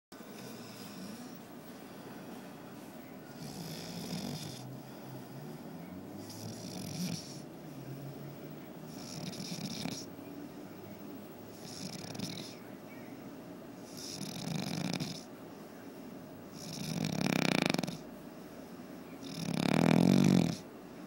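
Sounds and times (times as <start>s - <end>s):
man snoring: 3.3s - 10.1s, 11.6s - 12.6s, 13.9s - 15.3s, 16.5s - 18.0s, 19.2s - 20.7s.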